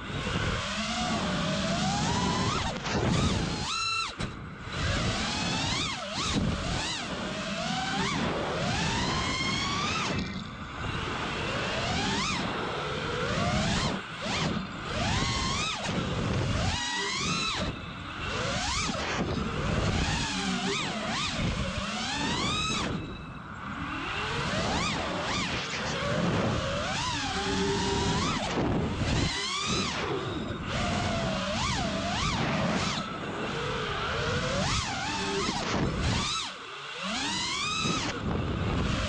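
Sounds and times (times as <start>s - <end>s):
drone motors whining: 0.0s - 39.0s
wind rush: 8.0s - 36.3s, 37.3s - 39.0s.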